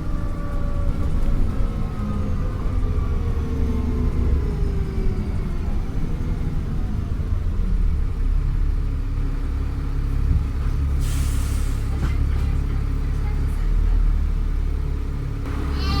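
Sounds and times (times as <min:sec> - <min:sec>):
bus diesel engine rumbling: 0:00.0 - 0:16.0.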